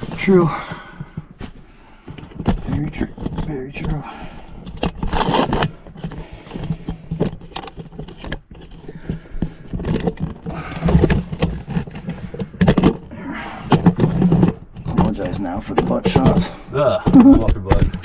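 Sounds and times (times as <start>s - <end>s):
scraping and rustling against rock: 0.0s - 16.6s.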